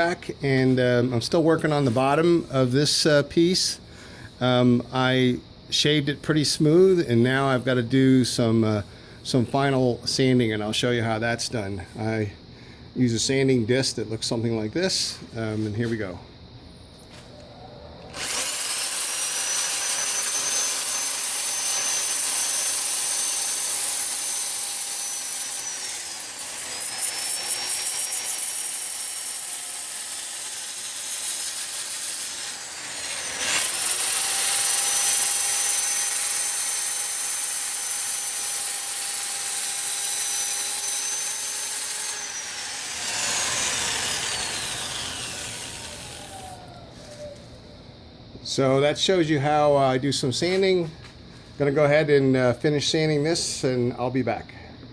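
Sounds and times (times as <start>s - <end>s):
sanding disc scraping wood: 40.1s - 46.4s.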